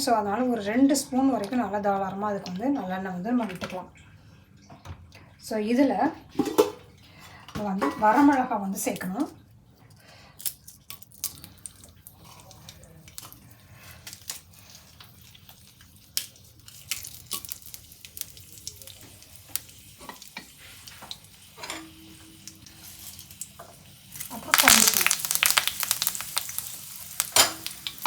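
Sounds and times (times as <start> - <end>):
chillies sizzling in oil: 11.4 - 28.0.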